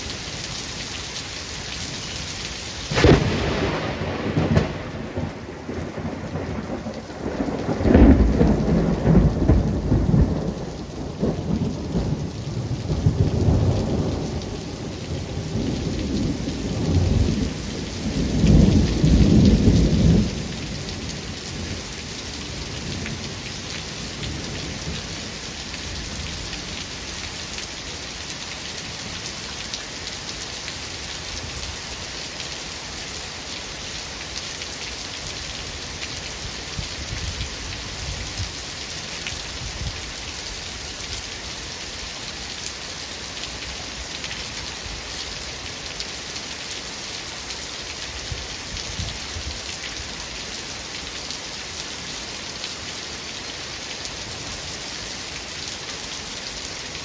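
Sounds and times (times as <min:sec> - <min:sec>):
heavy rain: 0:00.0 - 0:57.0
rolling thunder: 0:02.9 - 0:21.1.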